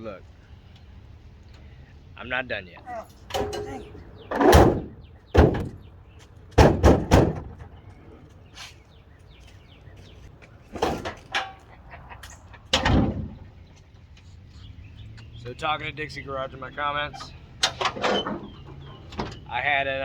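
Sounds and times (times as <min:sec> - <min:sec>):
loud bangs and knocks: 0:03.3 - 0:05.9, 0:06.5 - 0:07.8.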